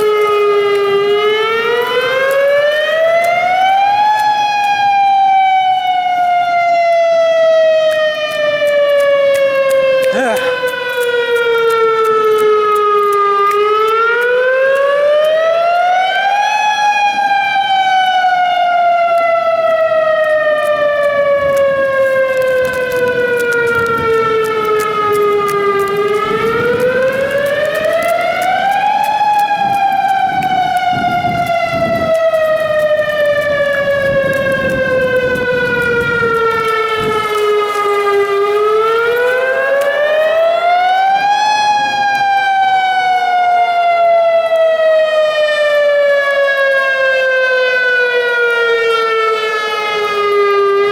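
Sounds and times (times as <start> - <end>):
mechanical warning siren wailing: 0.0 - 50.9.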